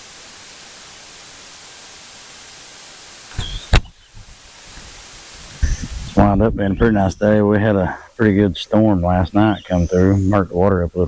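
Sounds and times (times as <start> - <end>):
steady hiss: 0.0 - 11.0.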